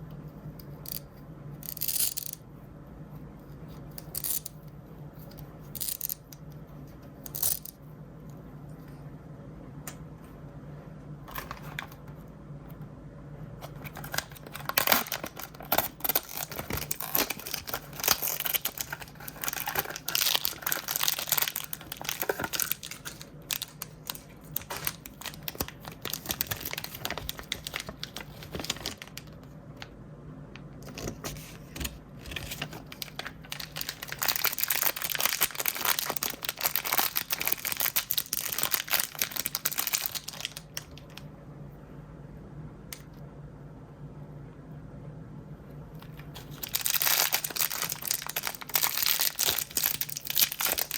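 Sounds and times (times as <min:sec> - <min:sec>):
plastic packaging crinkling and tearing: 0:13.7 - 0:29.4, 0:32.3 - 0:41.2, 0:46.3 - 0:50.9.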